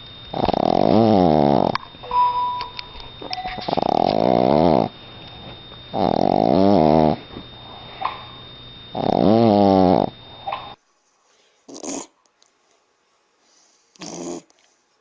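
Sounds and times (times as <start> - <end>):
dog snoring with squeal: 0.3 - 1.9, 3.2 - 10.8, 11.7 - 12.2, 14.0 - 14.5.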